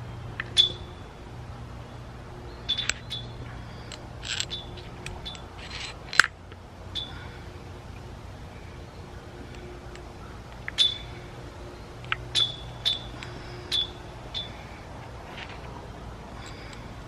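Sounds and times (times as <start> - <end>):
faint steady hum: 0.0 - 17.0
sharp metallic clinks: 10.7 - 11.2.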